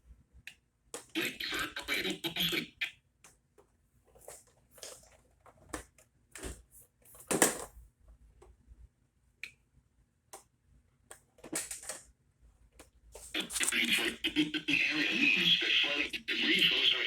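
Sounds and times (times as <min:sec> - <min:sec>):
broken-up broadcast voice: 0:01.1 - 0:02.9, 0:13.3 - 0:17.0
crackles and clicks: 0:13.3 - 0:14.8.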